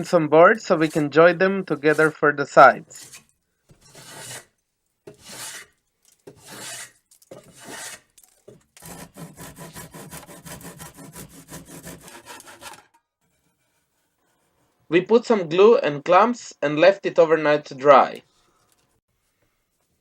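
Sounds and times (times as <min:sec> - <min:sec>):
hand plane shaving wood: 0:00.0 - 0:04.5, 0:05.1 - 0:08.1, 0:08.8 - 0:14.6.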